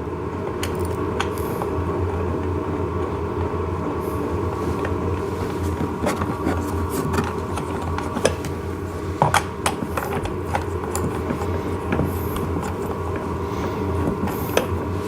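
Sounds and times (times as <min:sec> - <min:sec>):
steady hum: 0:00.0 - 0:15.0
clicks and knocks of washer and nut: 0:09.2 - 0:14.8.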